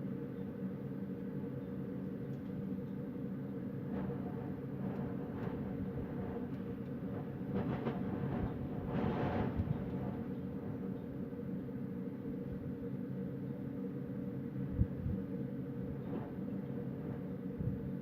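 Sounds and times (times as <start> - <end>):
wind blowing low rumble: 14.6 - 15.3, 17.0 - 18.0.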